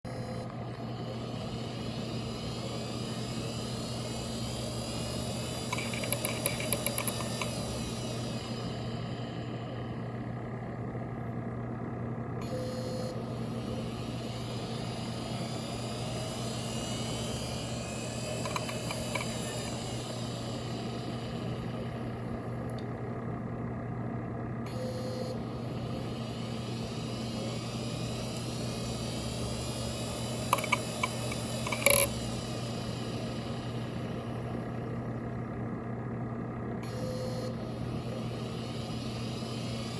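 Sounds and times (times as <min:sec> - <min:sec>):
hard drive spindle hum: 0:00.0 - 0:39.9
hard drive head clicks: 0:18.4 - 0:19.4, 0:30.5 - 0:32.1.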